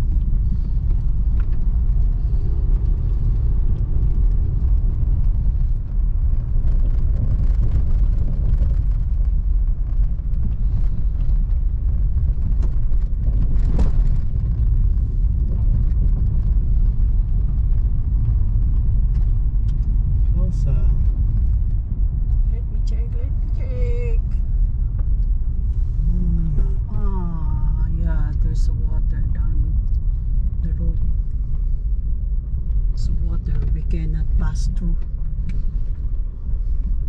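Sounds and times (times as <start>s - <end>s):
car engine and road rumble: 0.0s - 37.0s.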